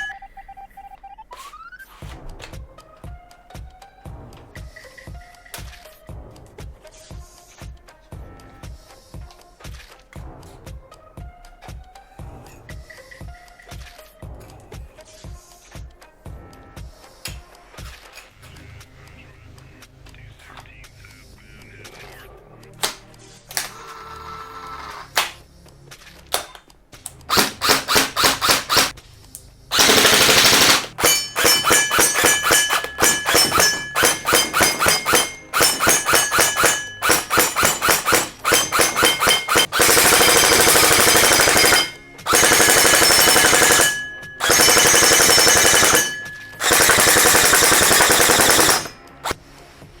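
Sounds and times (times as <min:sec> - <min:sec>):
electric gel blaster firing: 0:27.3 - 0:28.9, 0:29.7 - 0:49.4.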